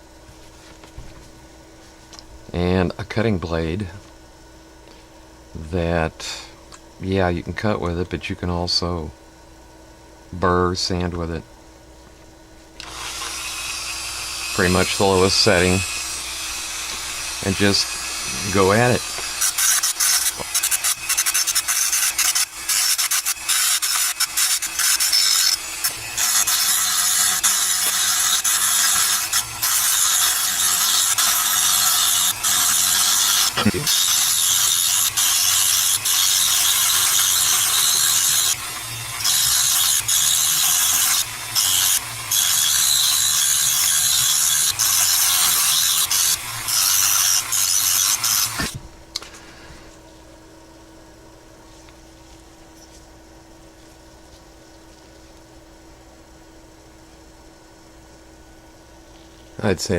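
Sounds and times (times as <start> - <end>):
rotary tool grinding metal: 12.8 - 48.8.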